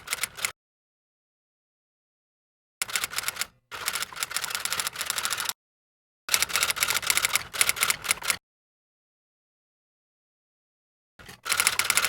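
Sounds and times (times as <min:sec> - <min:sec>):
rapid mechanical clicking: 0:02.8 - 0:05.6, 0:11.2 - 0:12.0.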